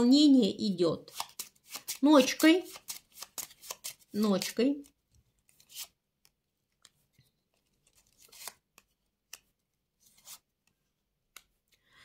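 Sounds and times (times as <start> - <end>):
playing cards clicking: 1.1 - 7.0, 7.8 - 9.6.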